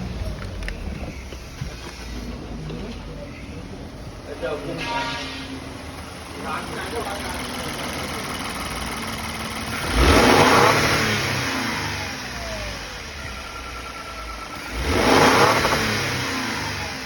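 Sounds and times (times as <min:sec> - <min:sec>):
car engine revving from idle: 0:05.8 - 0:17.0.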